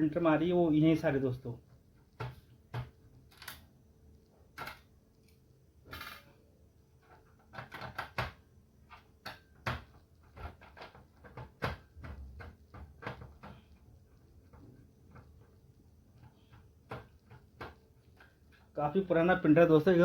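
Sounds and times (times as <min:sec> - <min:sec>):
plastic clicks and knocks: 0:02.1 - 0:03.6, 0:07.0 - 0:18.8.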